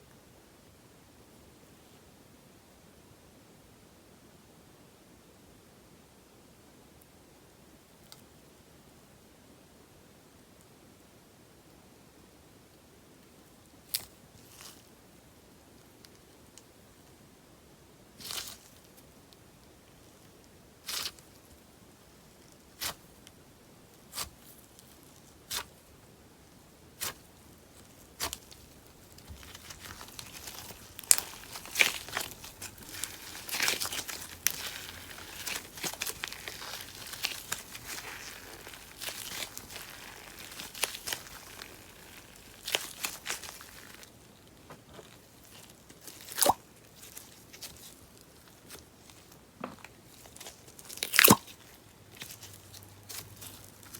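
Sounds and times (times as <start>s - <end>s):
clay slime crackling: 20.8s - 21.3s, 22.6s - 23.2s, 24.0s - 26.0s, 26.6s - 53.9s.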